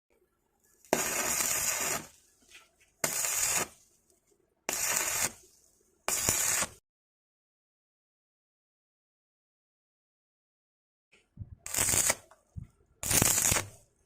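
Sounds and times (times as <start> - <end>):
arc welding crackling and sizzling: 0.7 - 3.9, 4.7 - 6.8, 11.6 - 14.0.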